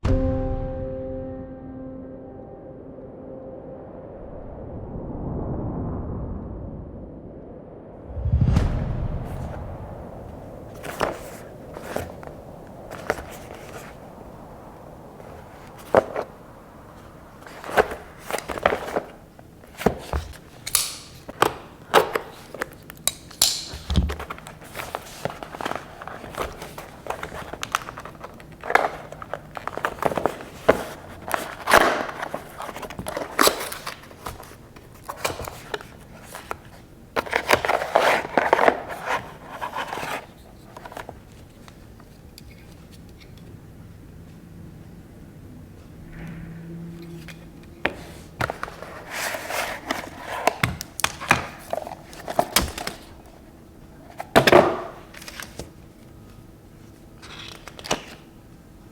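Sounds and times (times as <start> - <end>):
packaging rustling: 10.5 - 43.1, 47.4 - 55.9
packaging taps and clicks: 17.0 - 42.5.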